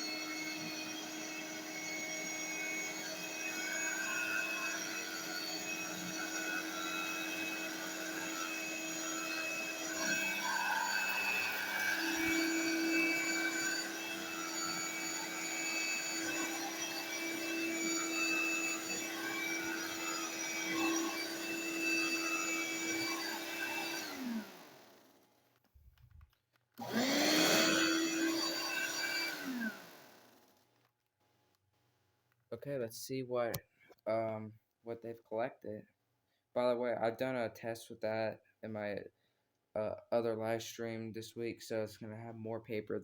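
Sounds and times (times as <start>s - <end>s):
handheld vacuum running: 0.0s - 25.1s, 26.8s - 30.5s
vacuum motor spinning up: 0.0s - 25.1s, 26.8s - 30.6s
vacuum motor winding down: 0.0s - 25.1s, 26.8s - 30.4s.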